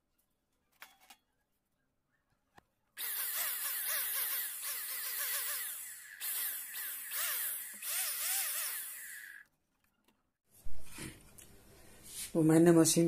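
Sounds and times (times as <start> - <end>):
electric screwdriver whirring: 3.0 - 9.5.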